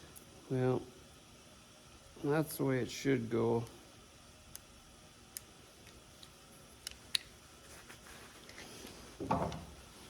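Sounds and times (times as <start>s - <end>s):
small parts clicking and tapping: 5.3s - 7.3s.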